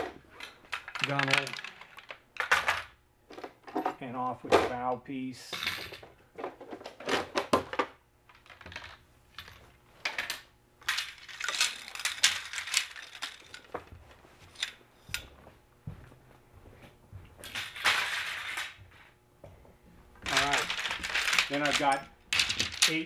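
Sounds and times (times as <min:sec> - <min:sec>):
metal rods clinking and rattling: 0:00.0 - 0:04.0, 0:08.3 - 0:13.9, 0:20.2 - 0:23.0.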